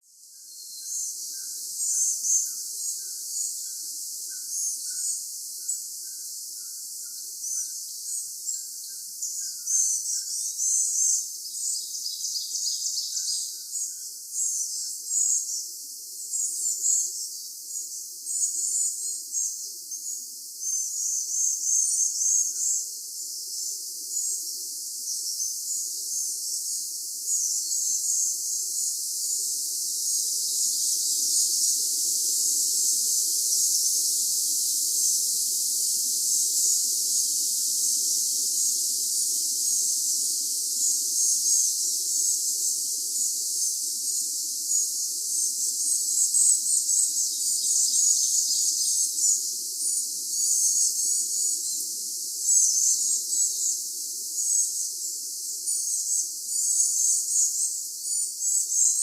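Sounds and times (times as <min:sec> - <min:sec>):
birds chirping and twittering: 0:00.3 - 0:56.2
steady high hiss: 0:20.6 - 0:55.6.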